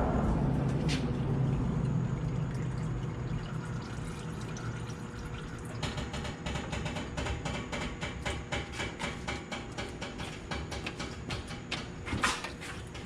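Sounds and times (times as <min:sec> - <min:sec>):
low hum: 0:00.0 - 0:04.5
oil pouring into drain pan: 0:01.8 - 0:06.0.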